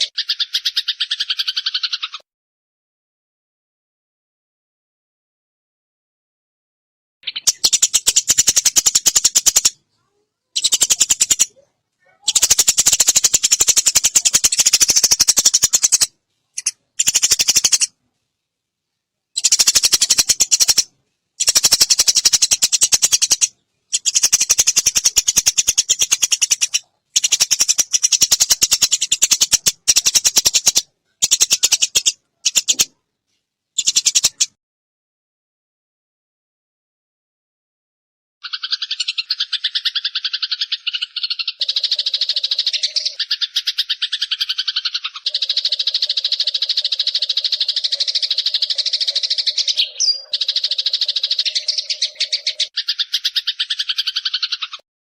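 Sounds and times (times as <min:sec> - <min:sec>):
sparrow chattering calls: 0:00.0 - 0:02.2, 0:07.2 - 0:09.8, 0:10.6 - 0:17.9, 0:19.4 - 0:33.0, 0:33.8 - 0:34.6, 0:38.4 - 0:54.8.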